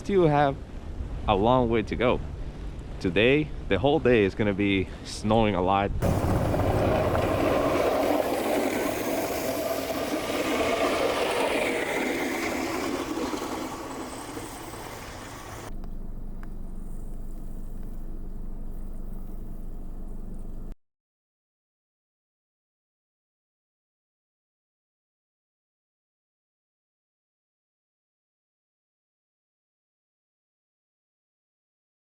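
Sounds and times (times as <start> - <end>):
steady low hum: 0.0 - 20.8
motor-driven rushing noise: 6.0 - 20.7.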